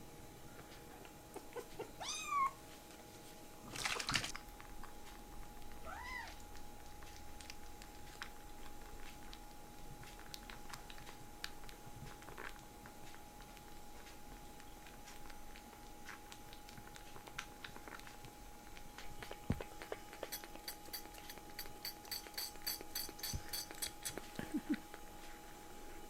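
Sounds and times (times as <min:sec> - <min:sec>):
faint steady hum: 0:00.0 - 0:26.0
kitten mewing: 0:01.4 - 0:02.6.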